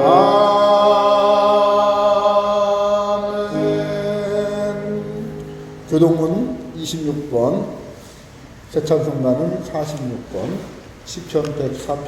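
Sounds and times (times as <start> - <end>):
congregation singing a hymn: 0.0 - 7.2.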